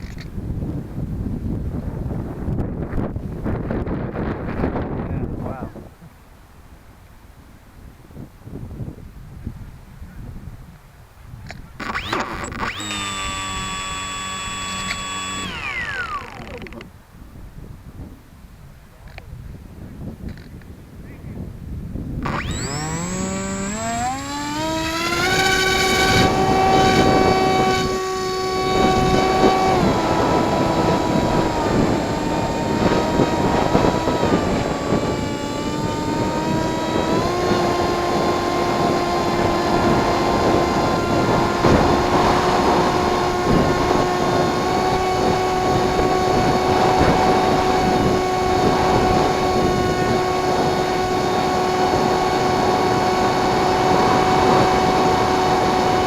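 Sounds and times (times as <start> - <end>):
wind on microphone: 0.0 - 56.0
model plane motor whining: 11.7 - 16.9, 22.2 - 56.0.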